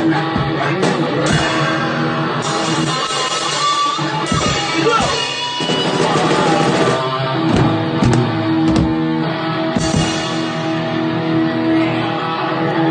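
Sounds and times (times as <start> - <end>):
rock band jamming: 0.0 - 12.9
drum hits: 5.7 - 9.2, 9.8 - 10.5.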